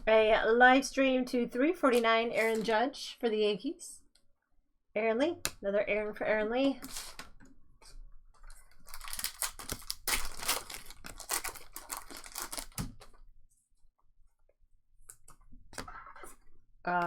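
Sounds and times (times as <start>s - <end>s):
foil wrapper tearing and crinkling: 8.7s - 13.2s.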